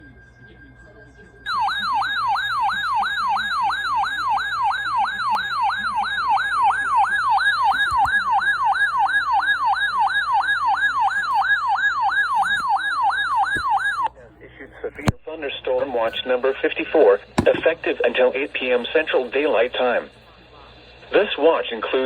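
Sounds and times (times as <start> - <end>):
electronic alert siren sweeping: 1.5 - 14.1.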